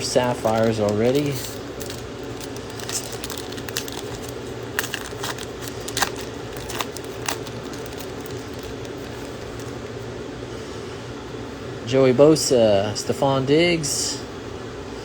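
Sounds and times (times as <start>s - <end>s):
plastic wrapper crinkling: 0.0s - 9.9s
steady background hum: 0.0s - 15.0s.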